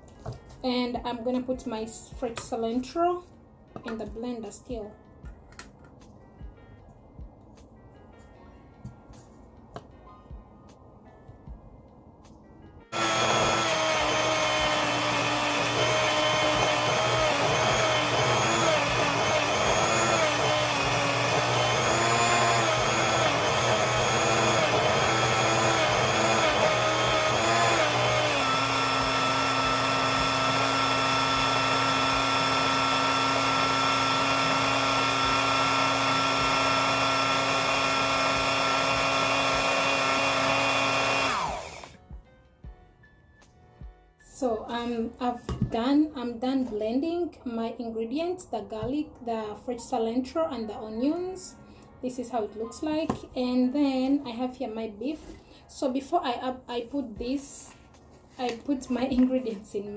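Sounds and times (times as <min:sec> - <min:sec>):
electric blender motor whine: 0:12.9 - 0:42.0.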